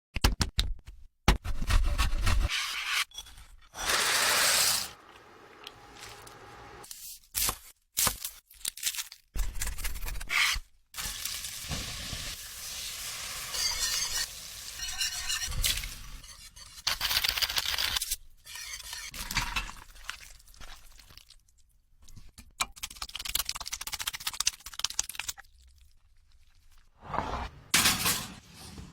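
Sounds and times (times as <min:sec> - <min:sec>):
food sizzling in a pan: 0:11.0 - 0:16.2
utensil stirring and scraping: 0:13.5 - 0:16.8.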